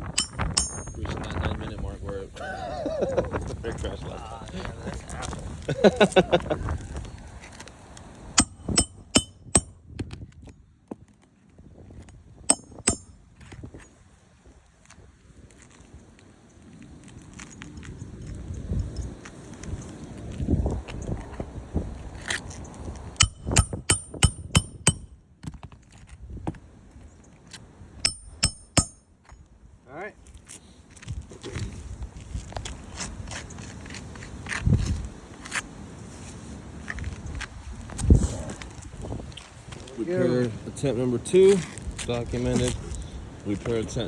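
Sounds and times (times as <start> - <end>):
hammer striking nail: 0.0 - 1.0, 8.4 - 9.8, 12.5 - 13.1, 23.2 - 25.6, 28.0 - 29.0.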